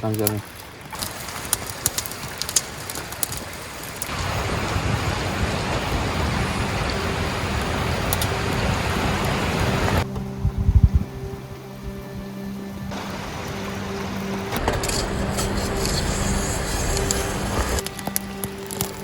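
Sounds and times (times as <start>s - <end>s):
sharp crackles: 0.0s - 12.2s, 12.9s - 19.0s
river flowing: 0.0s - 19.0s
music with held tones: 6.1s - 19.0s.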